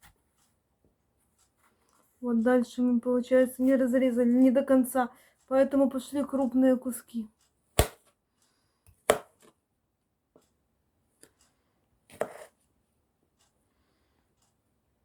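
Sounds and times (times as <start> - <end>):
knife chopping on cutting board: 7.8 - 8.0, 9.1 - 9.5, 12.1 - 12.5
knife scraping board: 12.1 - 12.6.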